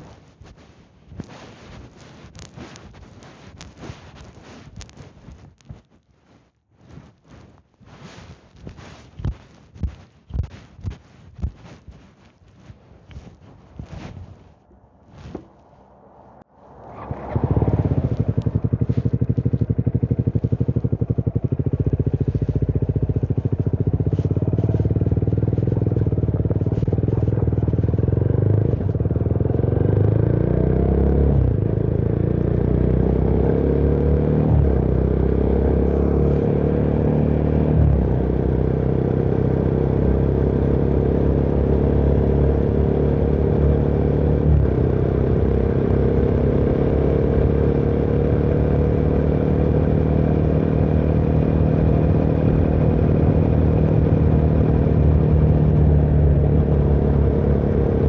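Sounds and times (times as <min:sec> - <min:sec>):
motorcycle engine shifting gears: 0:15.1 - 0:58.0.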